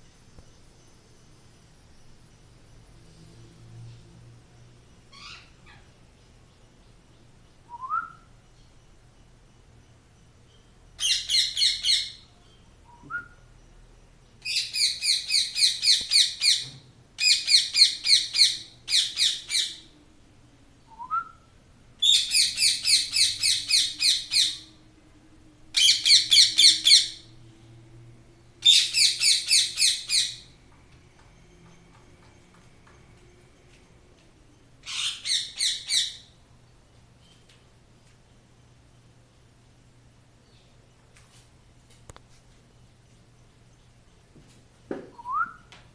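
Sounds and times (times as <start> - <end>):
quiet rising chirps: 22.8 - 35.4.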